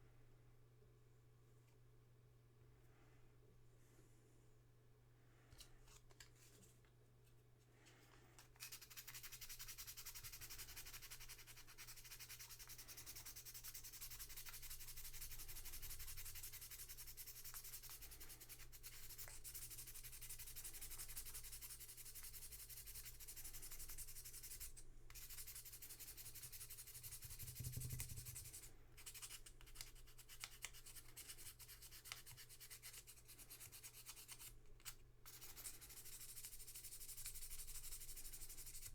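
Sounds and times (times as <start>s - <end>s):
scratchy rubbing of small parts: 8.4s - 38.9s.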